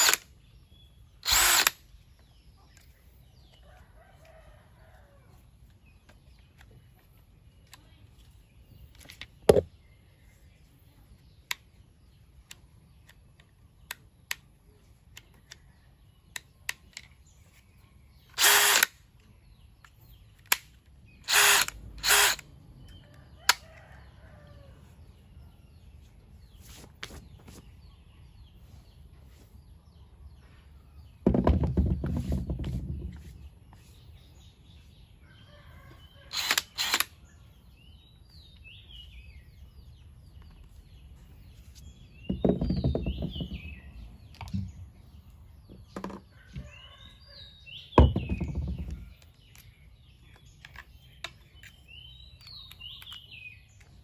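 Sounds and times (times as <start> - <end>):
cordless drill bursts: 0.0 - 0.2, 1.2 - 1.8, 18.4 - 18.9, 21.3 - 22.4, 36.3 - 37.1.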